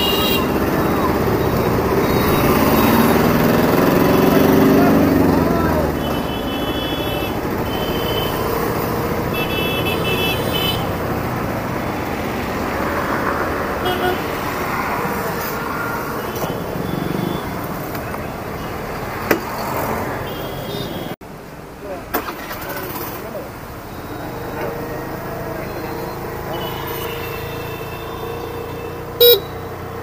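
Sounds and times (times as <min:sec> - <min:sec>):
vehicle horns: 0:00.0 - 0:11.3, 0:13.0 - 0:18.0, 0:20.2 - 0:21.2, 0:23.9 - 0:30.0
road and traffic noise: 0:00.0 - 0:30.0.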